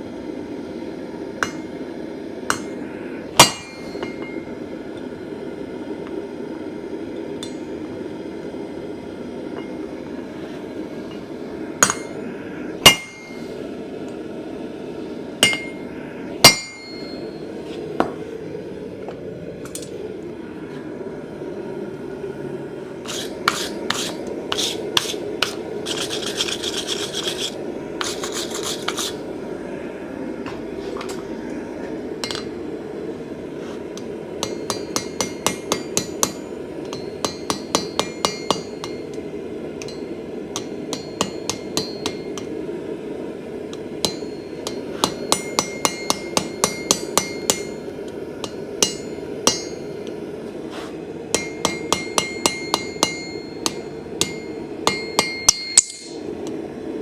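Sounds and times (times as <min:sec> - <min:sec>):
low background roar: 0:00.0 - 0:57.0
hammer striking steel: 0:01.4 - 0:01.8, 0:02.5 - 0:02.8, 0:03.4 - 0:04.5, 0:07.4 - 0:07.8, 0:11.8 - 0:12.2, 0:12.8 - 0:13.5, 0:15.4 - 0:15.8, 0:16.4 - 0:17.4, 0:32.2 - 0:32.6, 0:34.0 - 0:42.6, 0:43.7 - 0:50.0, 0:51.3 - 0:56.3.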